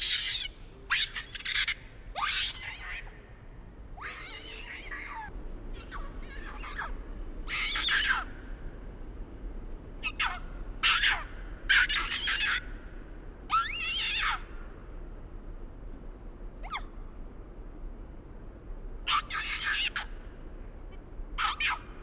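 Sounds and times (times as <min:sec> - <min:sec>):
baby monkey screaming: 0:00.0 - 0:03.2, 0:04.0 - 0:08.5, 0:10.0 - 0:12.8, 0:13.5 - 0:14.6, 0:16.6 - 0:17.0, 0:19.1 - 0:20.2, 0:21.4 - 0:22.0.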